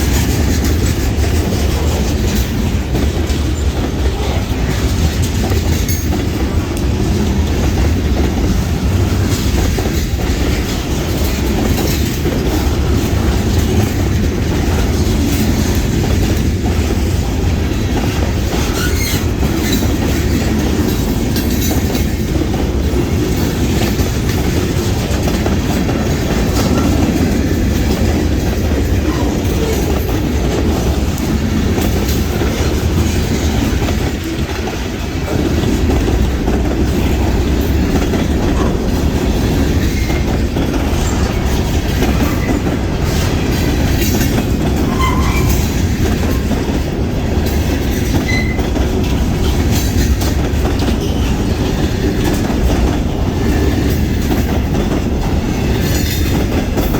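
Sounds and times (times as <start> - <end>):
freight train wheels clacking: 0.0 - 56.9
train wheel squeal: 18.5 - 20.1, 39.7 - 46.6, 47.9 - 48.8.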